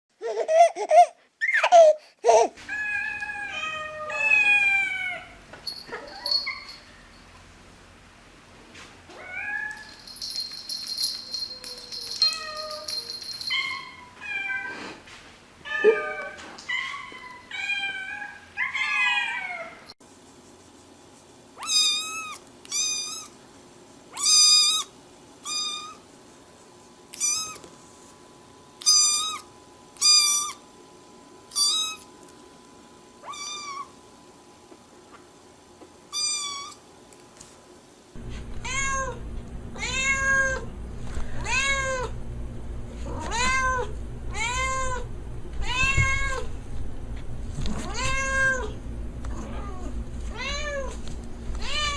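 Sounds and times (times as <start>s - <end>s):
cats meowing: 2.6s - 6.7s, 15.7s - 19.9s, 38.6s - 39.2s, 39.8s - 40.6s, 41.4s - 42.1s, 43.1s - 46.5s, 47.7s - 51.0s, 51.6s - 51.9s.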